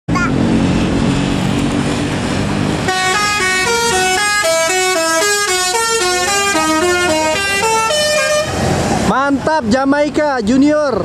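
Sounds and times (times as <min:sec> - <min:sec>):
musical air horns playing tune: 0:02.8 - 0:08.6.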